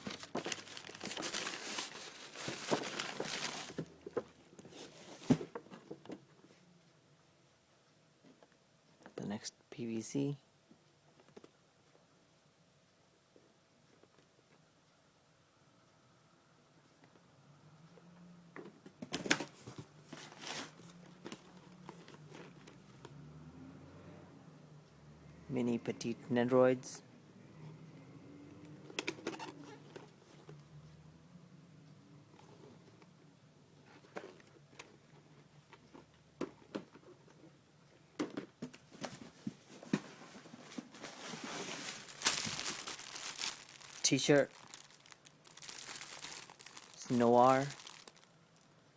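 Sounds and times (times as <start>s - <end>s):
packaging rustling and crinkling: 0.0s - 5.6s, 19.2s - 22.7s, 38.9s - 48.3s.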